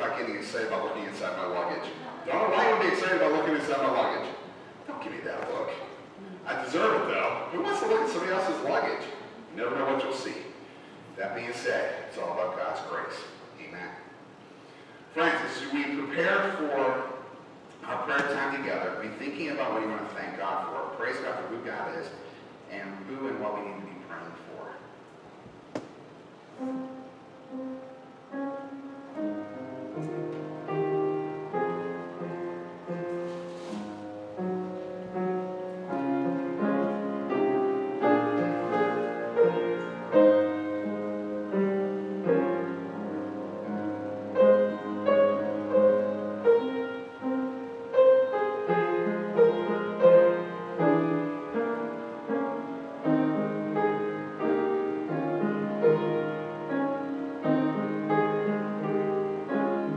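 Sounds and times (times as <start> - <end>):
slow solo piano piece: 26.6 - 59.9.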